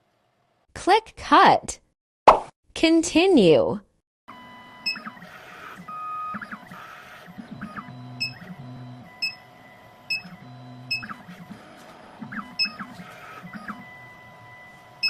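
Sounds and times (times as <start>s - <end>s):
key cutting machine motors humming: 4.3s - 15.0s.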